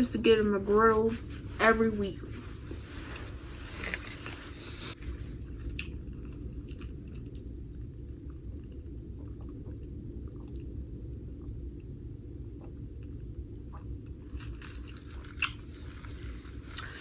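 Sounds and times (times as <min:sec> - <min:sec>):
low hum: 0:00.0 - 0:17.0
person chewing soft food: 0:03.2 - 0:10.8, 0:12.5 - 0:17.0.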